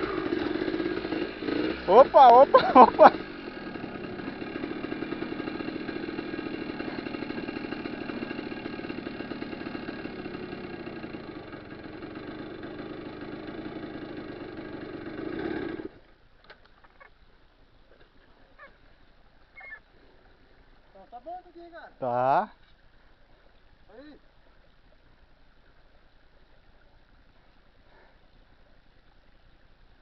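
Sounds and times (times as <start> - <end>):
motorcycle engine running: 0.0 - 16.0.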